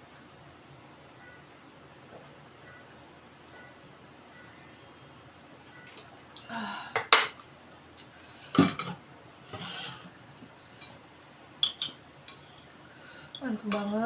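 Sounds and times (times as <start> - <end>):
soft noisy eating sounds: 5.6 - 14.0
cutlery clinking against bowl: 11.6 - 12.4.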